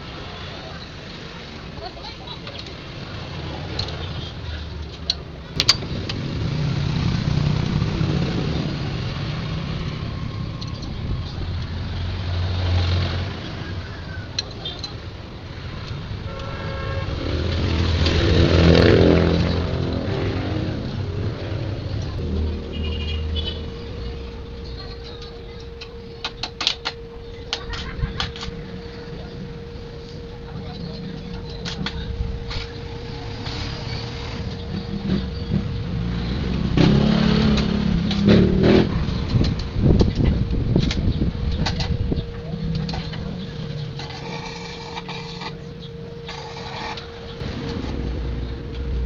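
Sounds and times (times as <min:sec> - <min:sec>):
vehicles passing: 0:00.0 - 0:49.0
steady hum: 0:17.1 - 0:49.0.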